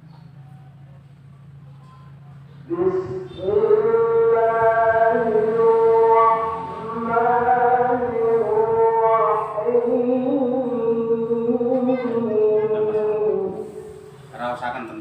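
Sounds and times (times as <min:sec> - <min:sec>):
person chanting in long notes: 0:02.7 - 0:14.0.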